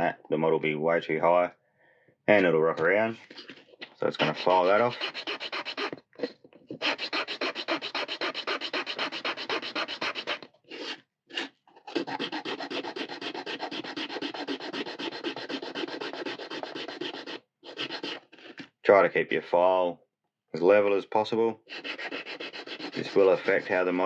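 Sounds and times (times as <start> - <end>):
hand file rasping: 3.2 - 18.7, 21.6 - 24.0.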